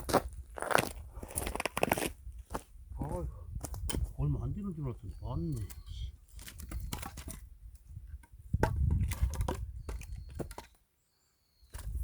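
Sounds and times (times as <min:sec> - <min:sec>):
sharp wooden knocks and cracks: 0:06.3 - 0:10.8, 0:11.7 - 0:12.0.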